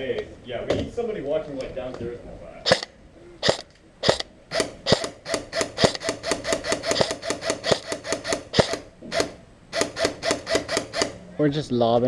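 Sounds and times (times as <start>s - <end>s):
airsoft gun firing rapidly: 2.7s - 11.2s.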